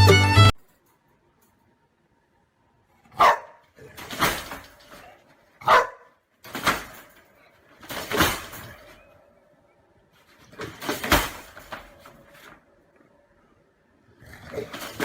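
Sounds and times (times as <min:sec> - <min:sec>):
dog barking: 0:03.1 - 0:04.0, 0:05.0 - 0:06.2.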